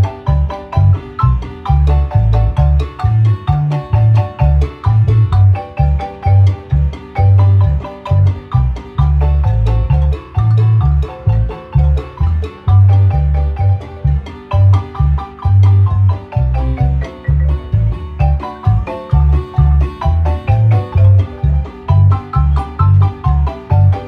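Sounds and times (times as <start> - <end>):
low bass notes: 0.0 - 24.0
marimba melody: 0.0 - 24.0.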